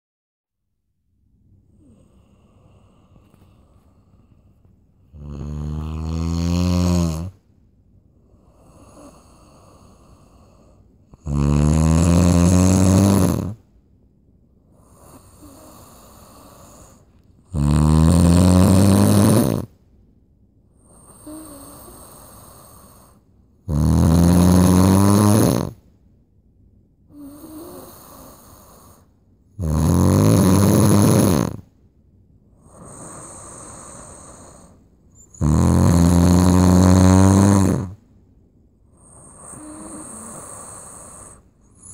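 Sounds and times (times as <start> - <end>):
soft breaths: 1.6 - 11.2, 14.6 - 17.6, 20.7 - 23.6, 27.1 - 29.4, 32.5 - 38.2, 38.8 - 41.9
loud buzzing snores: 1.8 - 3.6, 5.1 - 7.4, 8.3 - 13.6, 14.7 - 19.8, 20.8 - 25.8, 27.1 - 31.7, 32.6 - 38.0, 38.9 - 41.9.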